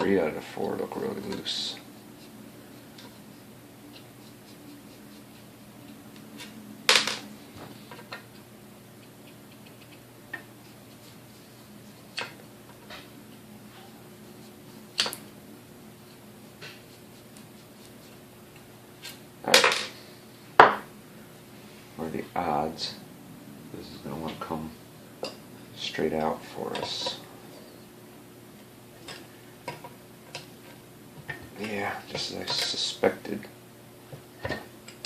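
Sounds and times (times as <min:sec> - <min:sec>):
faint steady hum: 0:00.0 - 0:35.0.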